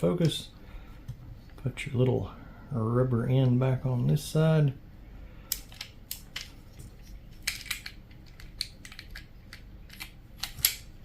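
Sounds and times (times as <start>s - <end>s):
small parts clicking and tapping: 5.5s - 10.9s.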